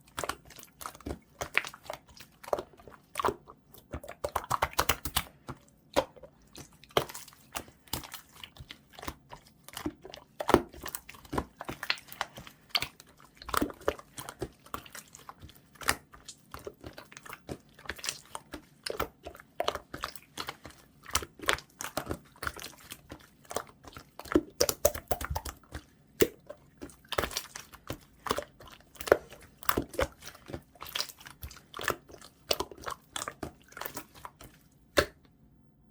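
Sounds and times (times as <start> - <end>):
slime being squished by hand: 0.0 - 35.3.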